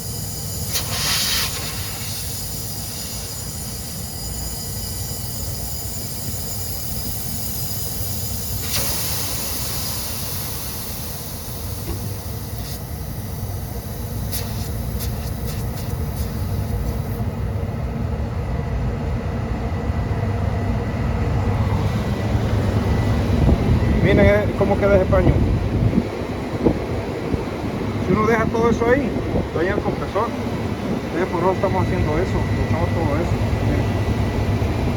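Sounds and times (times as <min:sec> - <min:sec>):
pressurised gas hissing: 0:00.0 - 0:17.8.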